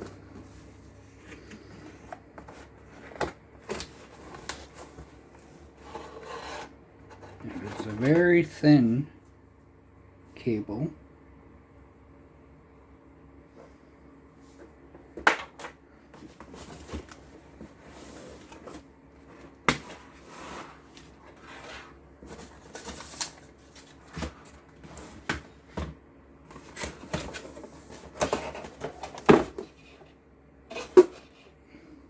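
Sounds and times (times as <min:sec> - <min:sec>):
packaging rustling: 0:20.2 - 0:25.3.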